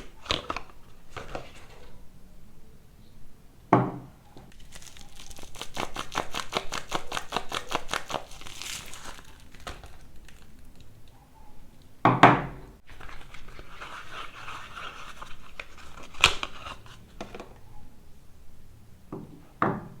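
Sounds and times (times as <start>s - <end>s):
packaging crackling and tearing: 0.0s - 2.0s, 4.5s - 11.2s, 12.8s - 17.6s.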